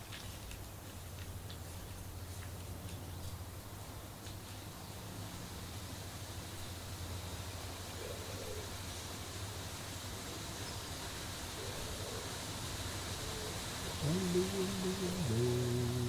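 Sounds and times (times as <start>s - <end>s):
dove cooing: 8.0s - 8.8s, 11.5s - 12.4s, 13.2s - 16.0s
low steady hum: 13.9s - 16.0s
person humming a low note: 14.0s - 16.0s.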